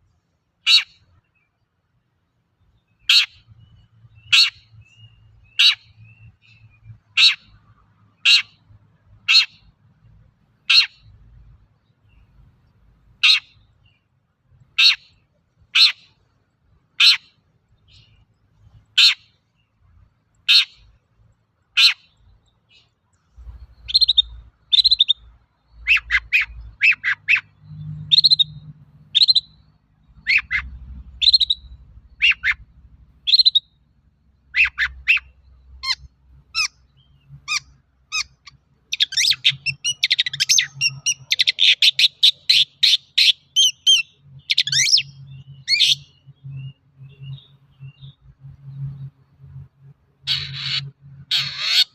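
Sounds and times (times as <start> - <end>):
bird singing and chattering: 2.8 - 7.6, 21.8 - 32.7, 33.3 - 33.8, 34.4 - 49.1.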